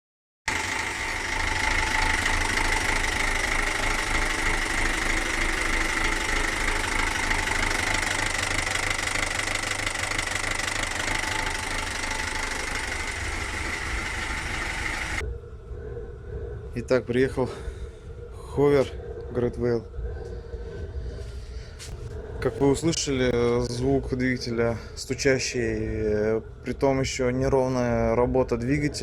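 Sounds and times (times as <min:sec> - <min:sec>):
engine knocking and running unevenly: 0:00.5 - 0:15.2.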